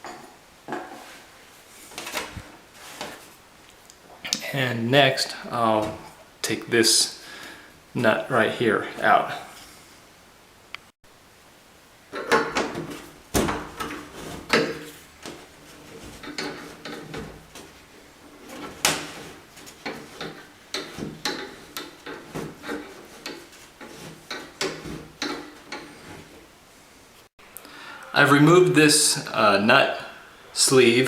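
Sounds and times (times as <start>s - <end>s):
tool clicking and scraping on metal: 13.7s - 26.4s.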